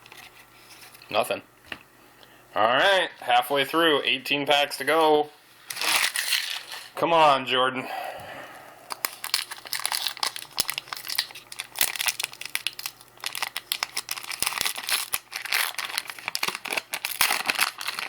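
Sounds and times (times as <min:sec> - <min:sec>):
wrapper tearing and crinkling: 0:05.7 - 0:07.0, 0:08.9 - 0:18.0.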